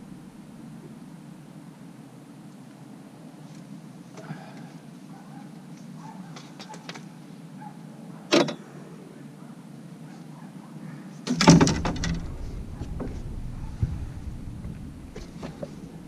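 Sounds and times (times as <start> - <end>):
steady low hum: 0.0 - 5.1, 10.9 - 16.0
clattering knocks and thumps: 11.3 - 16.0.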